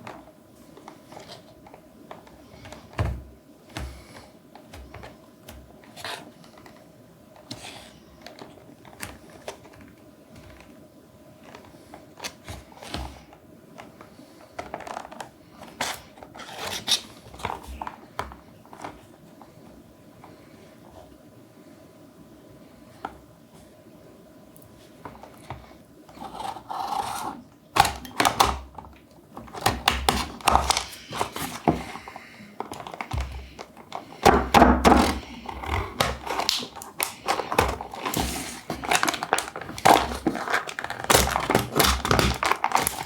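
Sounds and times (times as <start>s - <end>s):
faint steady hum: 0.0s - 43.0s
packaging clicks and crinkles: 11.4s - 19.0s, 26.2s - 43.0s.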